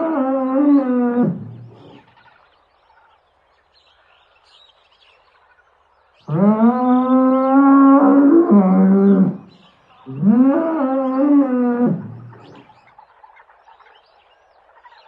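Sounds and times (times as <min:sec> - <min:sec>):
large animal calling: 0:06.3 - 0:12.7.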